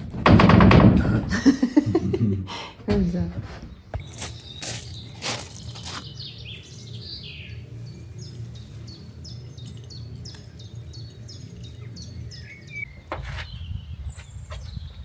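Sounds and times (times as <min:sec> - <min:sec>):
knocks: 0:00.0 - 0:01.6.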